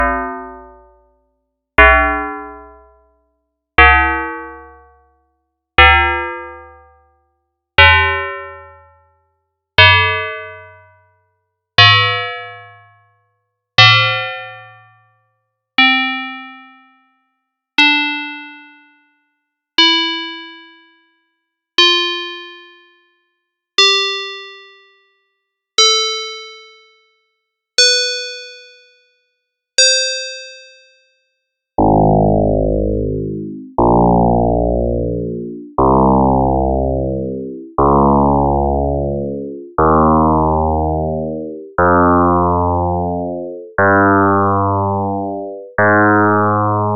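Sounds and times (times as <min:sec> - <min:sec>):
synthesized bell tones: 0:31.8 - 0:46.9.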